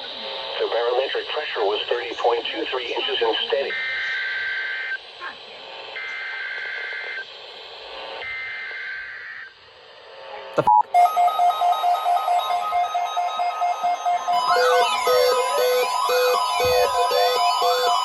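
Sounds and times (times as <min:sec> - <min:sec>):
fast pulsing electronic beeping: 0:10.6 - 0:18.0
two-tone data bursts: 0:10.6 - 0:18.0.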